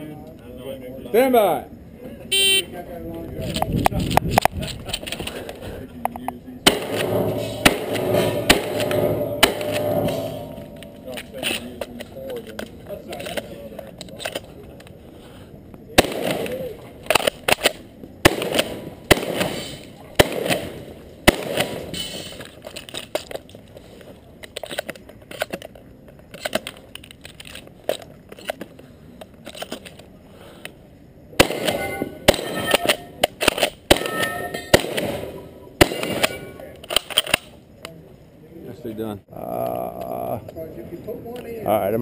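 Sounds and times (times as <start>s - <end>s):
shotgun shots: 6.6s - 11.3s, 16.0s - 22.1s, 31.4s - 36.6s.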